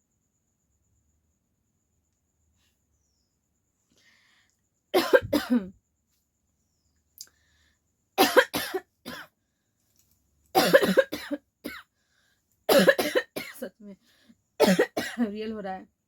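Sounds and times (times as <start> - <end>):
person coughing: 5.0 - 5.7, 8.2 - 9.3, 10.6 - 11.8, 12.7 - 13.7, 14.6 - 15.3.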